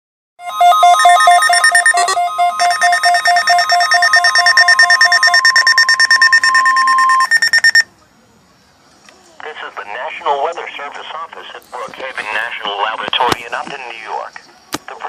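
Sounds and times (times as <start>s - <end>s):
steady electronic tone: 0.4s - 7.8s
weather radio alarms beeping: 0.4s - 7.9s.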